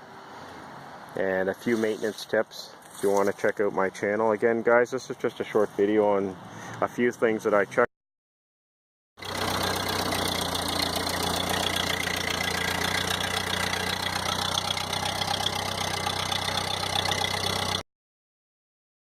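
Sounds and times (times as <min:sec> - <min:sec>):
tractor engine idling: 0:09.2 - 0:17.8.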